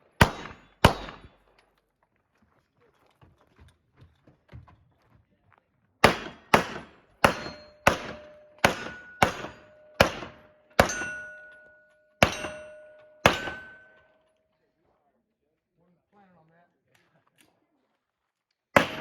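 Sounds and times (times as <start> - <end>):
gunshots: 0.2 - 1.4, 6.0 - 11.4, 12.2 - 13.9, 18.8 - 19.0
struck steel ringing: 7.2 - 14.2.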